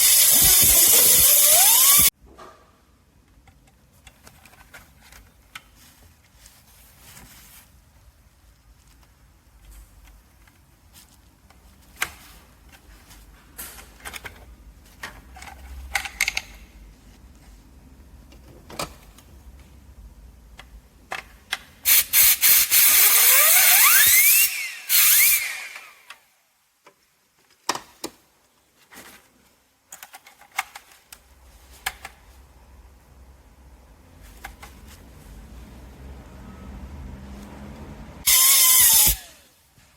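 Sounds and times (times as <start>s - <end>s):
small parts clicking: 0.0s - 2.1s.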